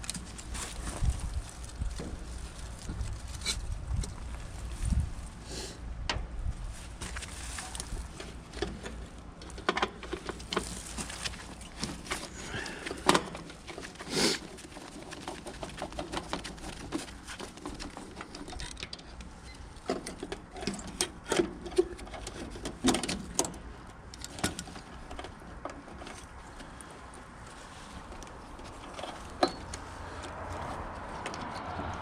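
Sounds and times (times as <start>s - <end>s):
hand tools clicking and tapping: 7.8s - 26.8s.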